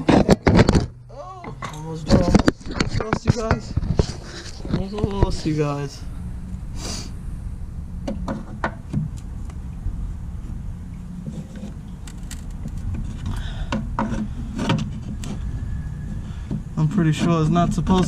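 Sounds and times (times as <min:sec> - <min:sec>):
metal suspension parts clunking: 0:00.0 - 0:03.8
low rumble: 0:00.8 - 0:18.0.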